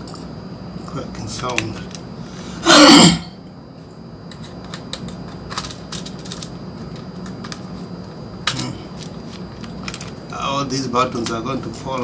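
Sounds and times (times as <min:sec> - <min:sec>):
plastic keys clicking: 0:04.3 - 0:06.6.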